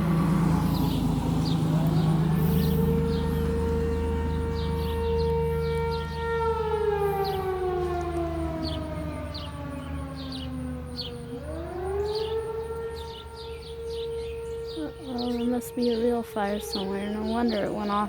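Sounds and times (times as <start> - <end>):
fire siren winding: 1.7 - 15.8.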